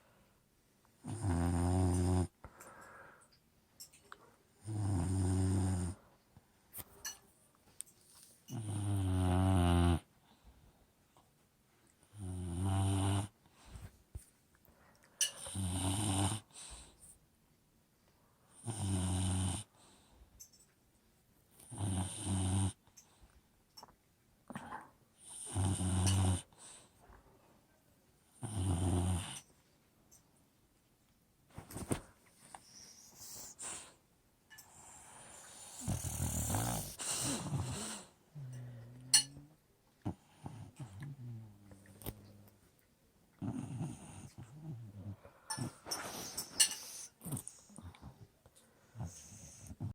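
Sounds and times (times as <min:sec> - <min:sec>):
dog snoring: 0:01.0 - 0:02.4, 0:04.6 - 0:06.0, 0:08.5 - 0:10.1, 0:12.1 - 0:13.4, 0:15.4 - 0:16.6, 0:18.6 - 0:19.7, 0:21.6 - 0:22.8, 0:24.5 - 0:26.5, 0:28.4 - 0:29.4, 0:34.6 - 0:39.4, 0:40.0 - 0:42.5, 0:43.4 - 0:48.2, 0:48.9 - 0:49.9.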